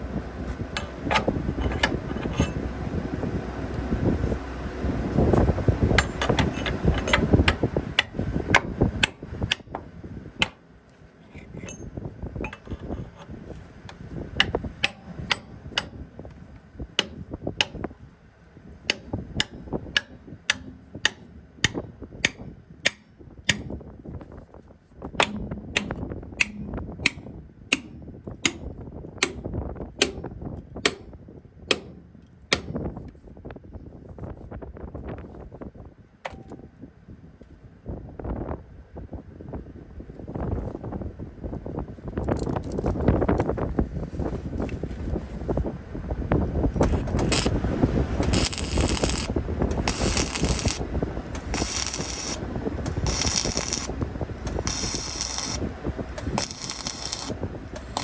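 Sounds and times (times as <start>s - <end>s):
low rumble: 0.0s - 10.5s, 25.0s - 35.1s, 42.8s - 58.0s
hammer striking steel: 25.2s - 29.4s.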